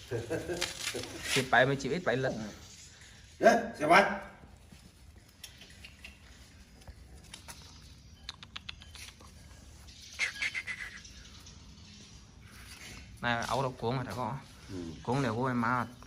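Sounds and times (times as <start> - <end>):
puppies squeaking and whimpering: 5.4 - 6.7, 7.4 - 11.8.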